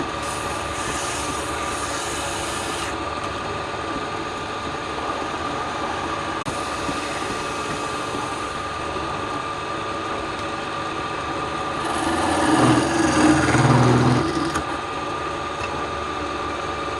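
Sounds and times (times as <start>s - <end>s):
wood lathe motor whining: 0.0s - 3.0s, 6.5s - 9.4s, 11.7s - 14.9s
tool pressed against spinning wood: 11.8s - 14.8s.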